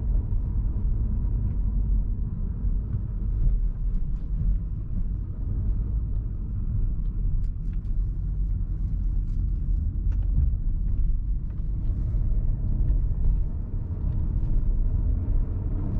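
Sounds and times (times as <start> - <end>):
car engine low rumble: 0.0 - 15.9.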